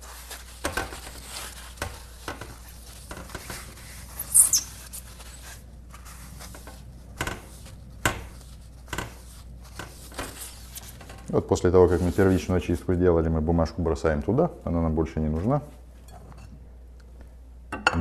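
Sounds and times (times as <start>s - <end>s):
paper towel rubbing glass: 0.0s - 12.9s
high squeak on glass: 4.1s - 5.0s.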